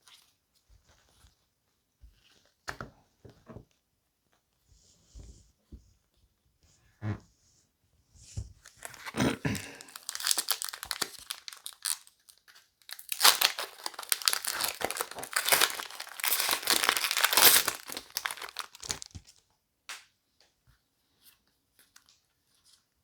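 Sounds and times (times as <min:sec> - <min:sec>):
wrapper tearing and crinkling: 0:08.8 - 0:19.4.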